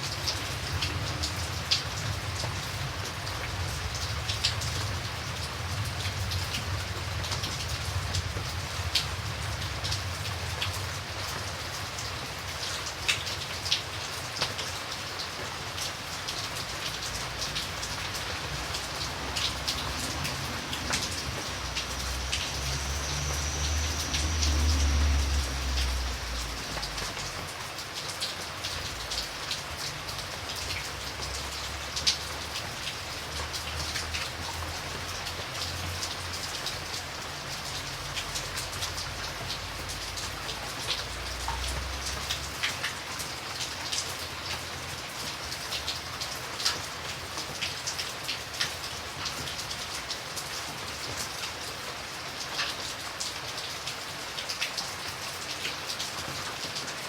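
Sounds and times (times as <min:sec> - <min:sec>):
steady rain falling: 0:00.0 - 0:57.0
raindrops tapping sharply: 0:16.5 - 0:44.2.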